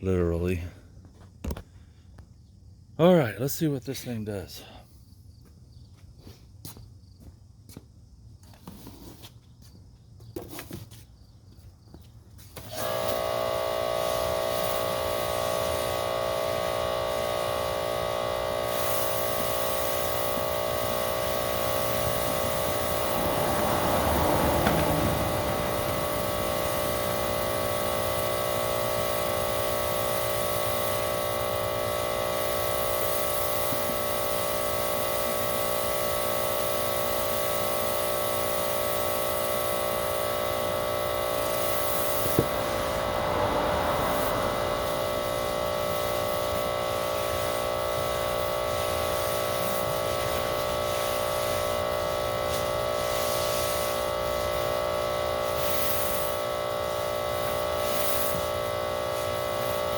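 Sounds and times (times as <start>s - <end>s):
pressure washer motor whining: 12.6s - 59.9s
water spraying on asphalt: 12.6s - 59.9s.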